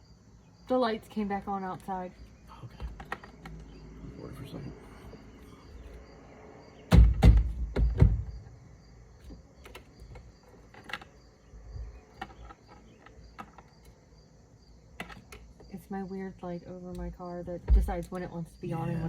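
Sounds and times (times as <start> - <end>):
heavy knocks: 6.9 - 8.6.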